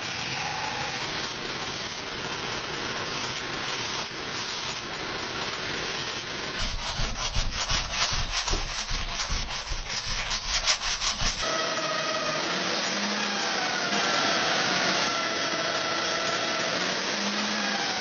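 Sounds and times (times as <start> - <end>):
steady abrasive hiss: 0.0 - 11.5
hand sanding metal blade: 6.5 - 11.5
power tool whining: 11.4 - 18.0.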